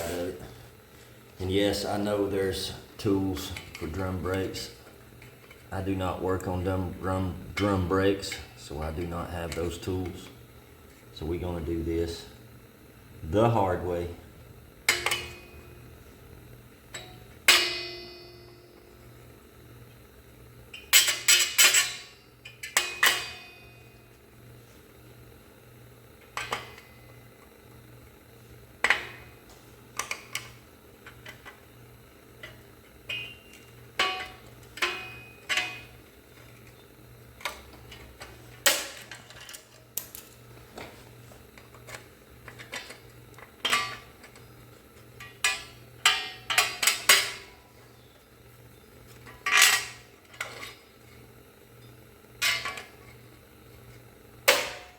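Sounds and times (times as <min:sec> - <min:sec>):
hand tools clanking on metal: 0:32.4 - 0:35.9, 0:41.9 - 0:44.4, 0:45.2 - 0:47.5.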